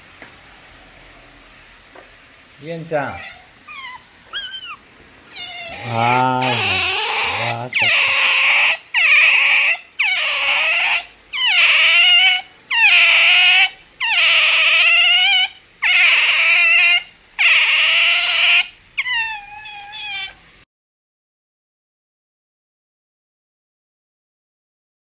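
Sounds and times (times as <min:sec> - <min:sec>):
animal crying calls: 0:03.0 - 0:20.5.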